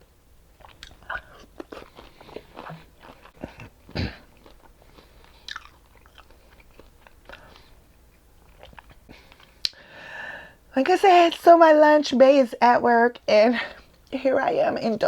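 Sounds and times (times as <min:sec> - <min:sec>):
person chewing and crunching: 0:00.6 - 0:09.8.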